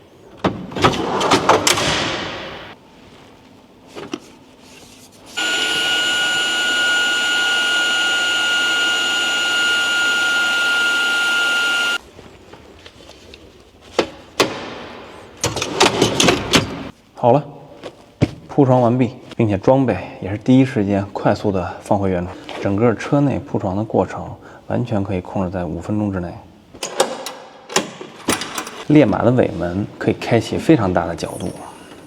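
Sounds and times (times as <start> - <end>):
electric air pump whining: 5.4 - 12.0.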